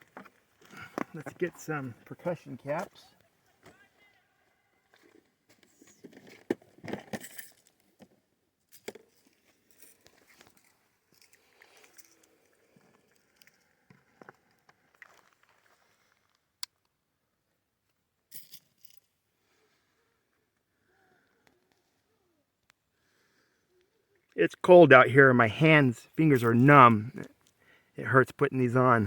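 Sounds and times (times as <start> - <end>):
rustling and scraping handling noise: 4.9 - 8.1.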